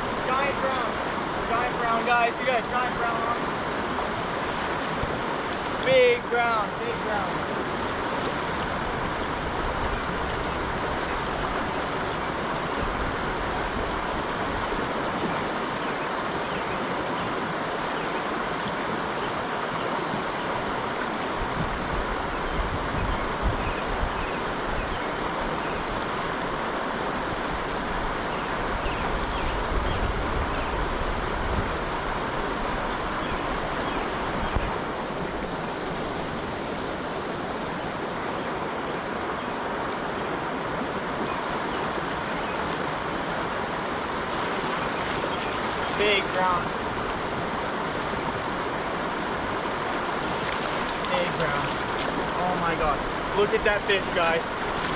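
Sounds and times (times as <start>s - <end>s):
creek water flowing: 0.0s - 54.9s.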